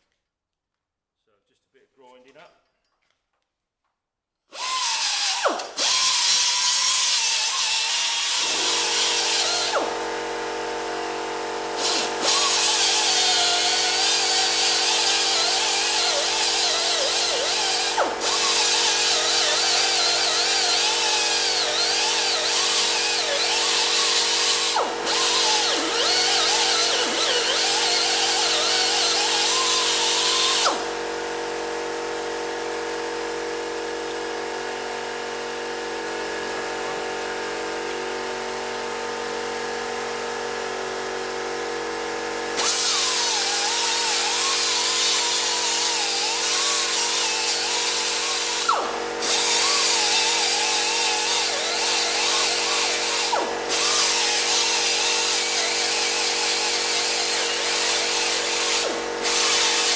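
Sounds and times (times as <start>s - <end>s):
angle grinder grinding metal: 11.8s - 30.9s, 42.6s - 59.9s.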